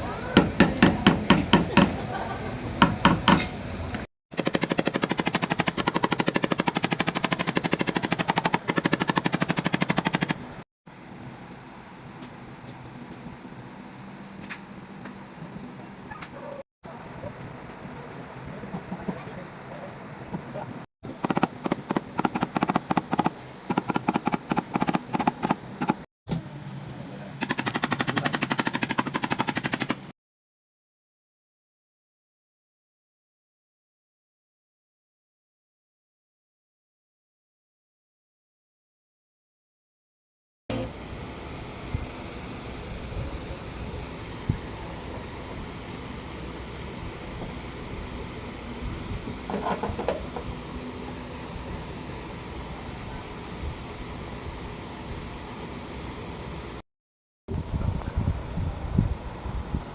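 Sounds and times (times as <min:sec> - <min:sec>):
tool tapping on metal panel: 0:00.3 - 0:02.0, 0:02.8 - 0:03.6, 0:49.5 - 0:50.5.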